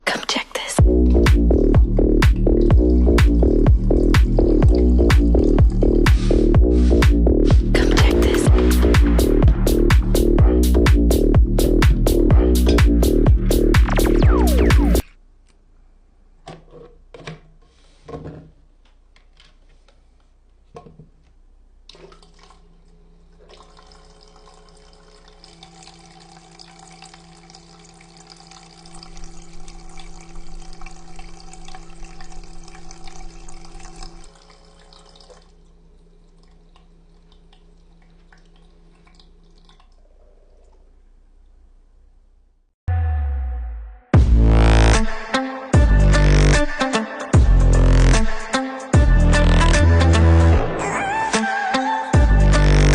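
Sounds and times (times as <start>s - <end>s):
water bubbling and trickling: 0.8s - 11.7s, 21.9s - 41.0s
humidifier humming: 23.1s - 39.7s.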